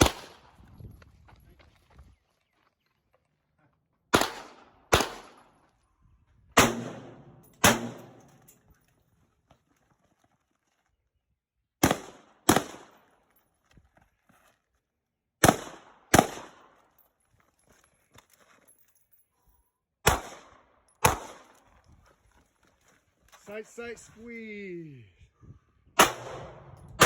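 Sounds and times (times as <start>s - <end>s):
echoing gunshots: 0.0s - 0.6s, 4.1s - 5.6s, 6.6s - 8.4s, 11.8s - 13.0s, 15.4s - 16.7s, 20.0s - 21.5s, 26.0s - 27.0s.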